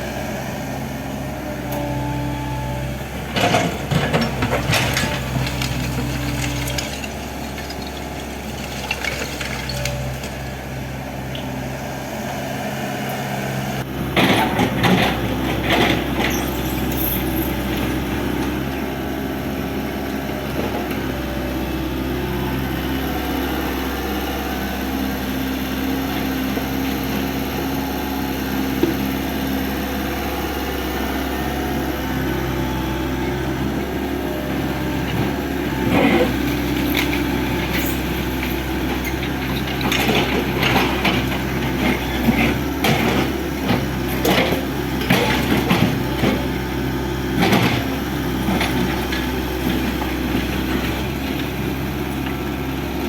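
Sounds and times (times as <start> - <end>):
excavator diesel engine running: 0.0 - 53.0
demolition knocks and crashes: 3.3 - 10.4, 14.1 - 18.6, 35.1 - 46.5, 47.3 - 51.6.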